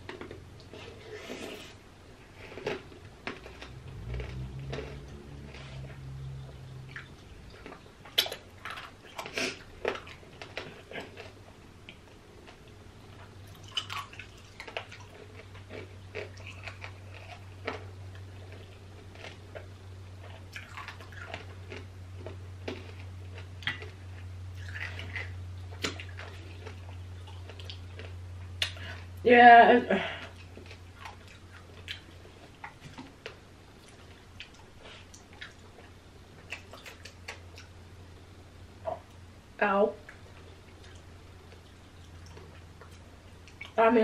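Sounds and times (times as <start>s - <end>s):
low hum: 0.0s - 35.0s
mouth smacks: 8.1s - 10.0s, 28.6s - 28.8s.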